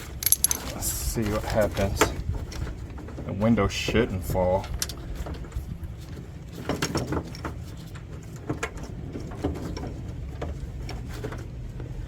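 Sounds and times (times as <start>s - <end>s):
clicks taps and scrapes of parts: 0.0s - 2.7s.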